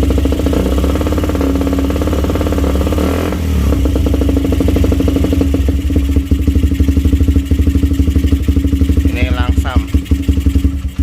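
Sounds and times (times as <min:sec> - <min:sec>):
motorcycle engine idling: 0:00.0 - 0:11.0.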